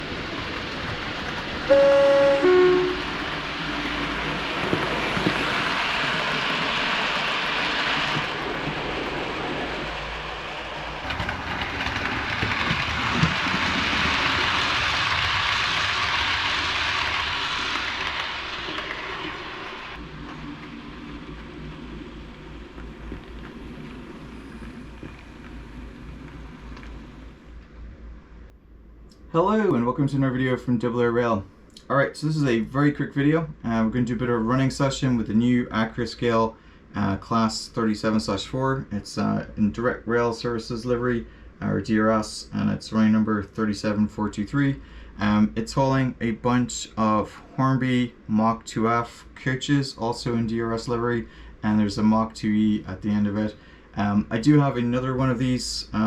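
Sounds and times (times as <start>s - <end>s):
locomotive engine running: 0.0s - 27.7s
wheels rolling on rail: 0.0s - 28.5s
two-tone locomotive horn: 1.7s - 3.2s.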